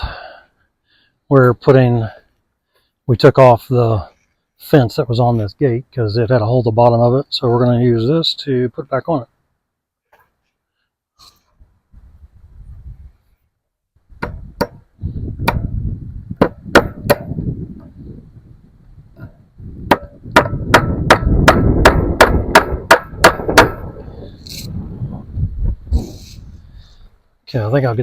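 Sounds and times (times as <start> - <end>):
hammer striking metal staples: 16.4 - 17.3, 19.9 - 23.9.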